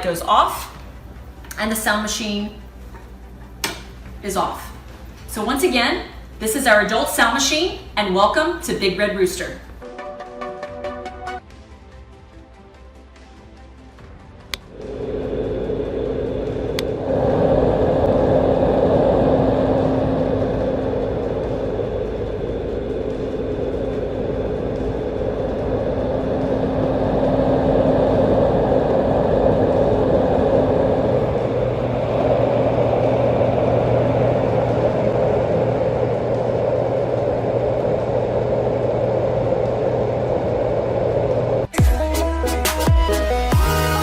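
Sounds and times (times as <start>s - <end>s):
low steady hum: 0.0s - 9.8s, 14.5s - 41.7s
steady rushing noise: 14.6s - 41.7s.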